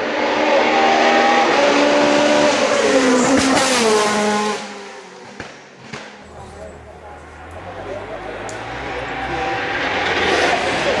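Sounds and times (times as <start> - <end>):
race car engine passing: 6.2 - 11.0.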